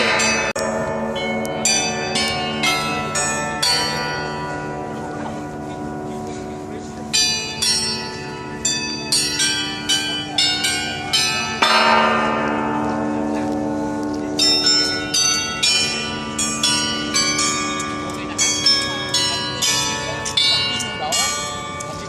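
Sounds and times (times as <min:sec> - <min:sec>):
tuned bells ringing a tune: 0:00.0 - 0:22.0.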